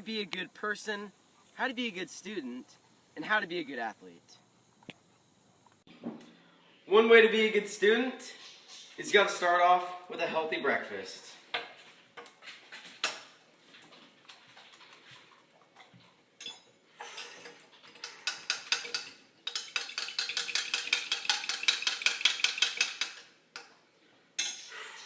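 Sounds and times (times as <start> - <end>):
utensil clinking against a dish: 16.4 - 23.7.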